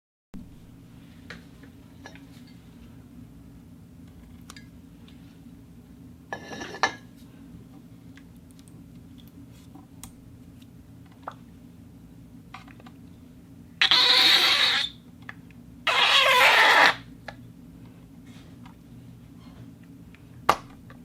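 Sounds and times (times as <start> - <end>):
rough squeaky rubbing: 13.8 - 15.0, 15.9 - 17.0.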